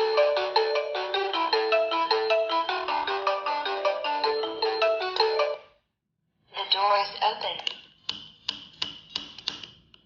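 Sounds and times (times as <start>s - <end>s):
doorbell chime ringtone: 0.0s - 5.8s.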